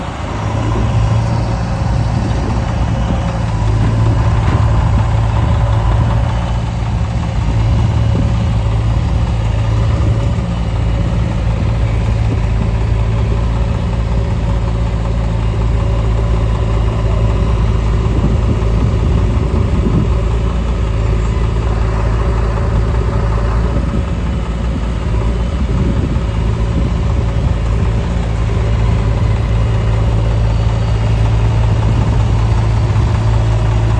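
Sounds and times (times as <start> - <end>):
diesel engine running: 0.0 - 33.9.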